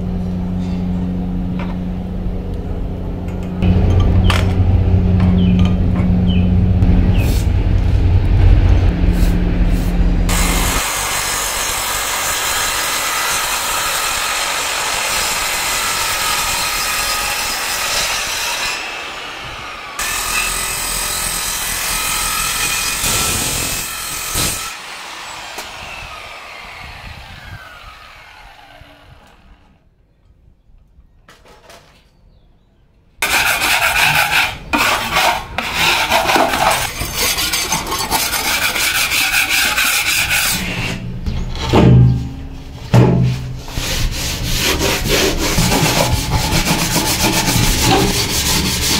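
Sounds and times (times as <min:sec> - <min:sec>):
saw cutting wood: 0:10.3 - 0:29.7, 0:33.2 - 0:42.0, 0:43.0 - 0:48.9.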